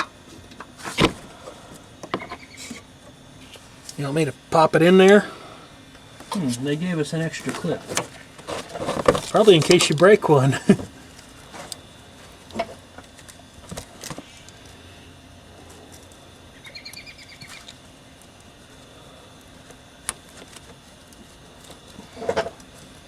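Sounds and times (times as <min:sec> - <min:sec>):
rapid high bird chirps: 0:16.5 - 0:17.7.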